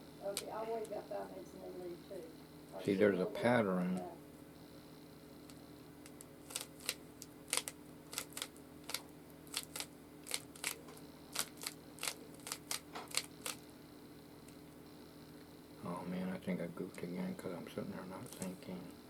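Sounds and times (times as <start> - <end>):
puzzle cube clicking as turned: 6.0 - 10.8, 11.4 - 13.6.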